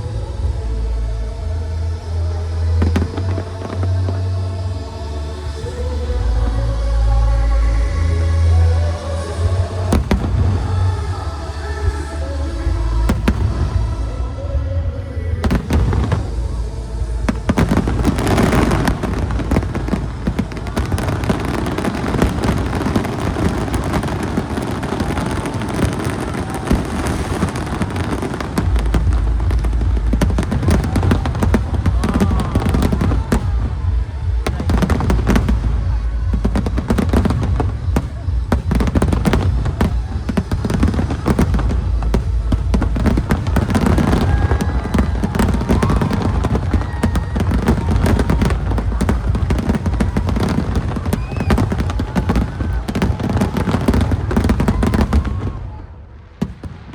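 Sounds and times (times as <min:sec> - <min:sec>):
deep rumbling booms: 0:09.3 - 0:56.9
fireworks crackling and popping: 0:09.9 - 0:11.2, 0:13.1 - 0:14.5, 0:15.4 - 0:56.9.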